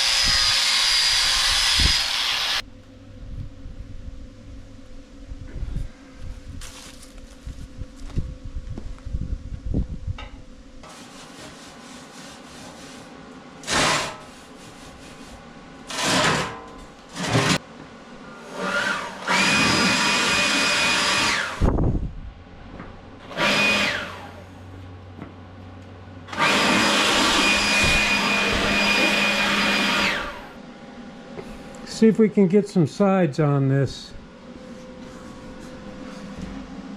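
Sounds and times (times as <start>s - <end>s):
electric power tool whine: 0.0s - 2.7s, 18.2s - 21.9s, 23.2s - 24.6s, 26.3s - 30.6s.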